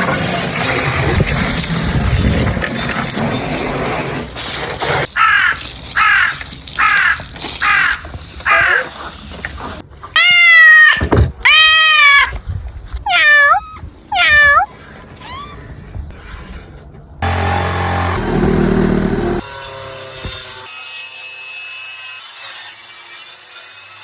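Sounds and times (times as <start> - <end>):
harsh bird calls: 5.2 - 9.8
drawn-out animal call: 5.2 - 11.0.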